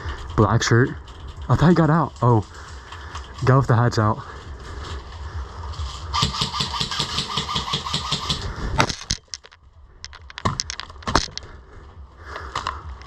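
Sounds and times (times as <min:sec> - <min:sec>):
electric rifle full-auto burst: 0:06.1 - 0:08.5
sharp cracks and clicks: 0:06.2 - 0:11.5.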